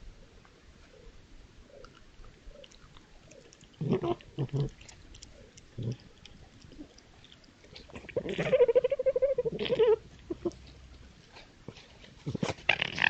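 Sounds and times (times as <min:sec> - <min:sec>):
fox wavering cry: 0:08.2 - 0:10.6.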